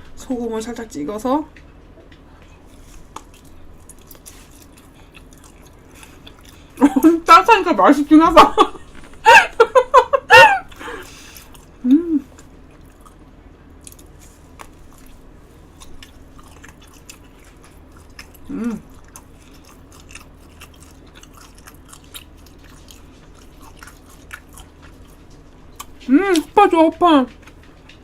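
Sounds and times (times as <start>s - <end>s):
person chewing: 2.0s - 7.0s, 10.6s - 26.5s
person humming: 11.8s - 12.3s, 18.5s - 18.9s.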